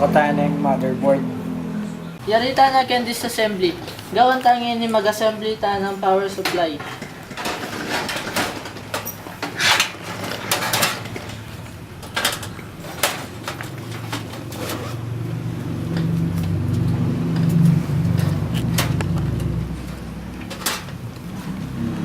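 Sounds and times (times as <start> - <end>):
vehicle engine running low: 10.5 - 22.0.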